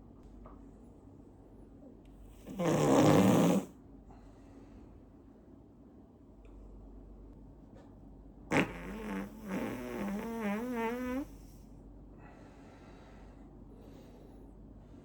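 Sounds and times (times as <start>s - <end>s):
long wobbling fart: 2.5s - 3.7s, 8.5s - 11.3s
faint hissing: 8.5s - 11.7s.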